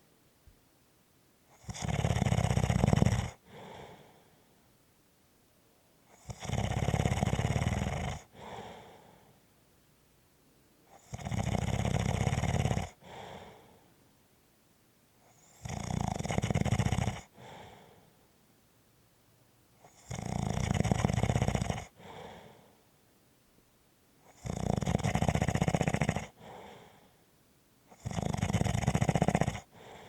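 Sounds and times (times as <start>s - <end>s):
rattling snores: 1.5s - 4.0s, 6.1s - 9.1s, 10.9s - 13.7s, 15.3s - 17.9s, 19.8s - 22.6s, 24.2s - 27.1s, 27.9s - 30.0s.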